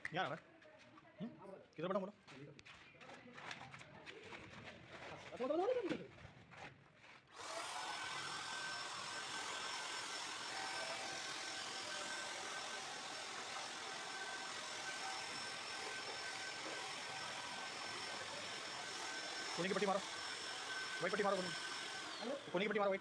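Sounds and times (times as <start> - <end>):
power tool motor whining: 7.4 - 23.0.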